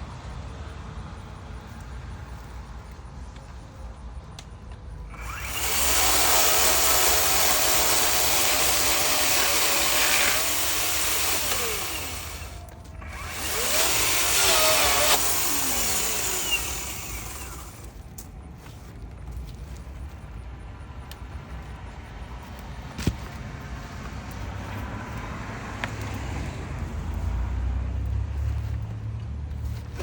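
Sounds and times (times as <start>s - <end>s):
chainsaw cutting wood: 5.1s - 18.0s.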